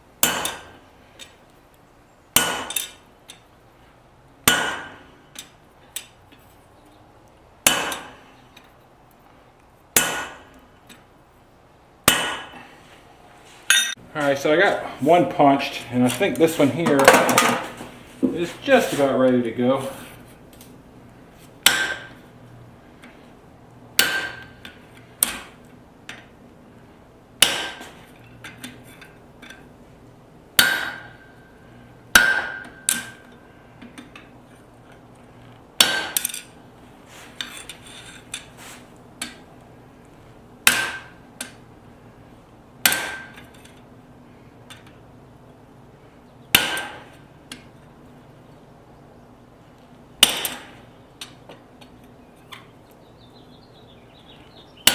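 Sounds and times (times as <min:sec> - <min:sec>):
hammer striking steel on anvil: 0:00.2 - 0:00.8, 0:02.4 - 0:03.0, 0:04.4 - 0:05.6, 0:07.6 - 0:08.2, 0:10.0 - 0:10.6, 0:12.0 - 0:12.6, 0:13.7 - 0:14.0, 0:21.6 - 0:22.2, 0:24.0 - 0:25.6, 0:27.4 - 0:28.0, 0:30.6 - 0:33.4, 0:35.8 - 0:36.5, 0:40.6 - 0:41.6, 0:42.8 - 0:43.6, 0:46.5 - 0:47.2, 0:50.2 - 0:50.8.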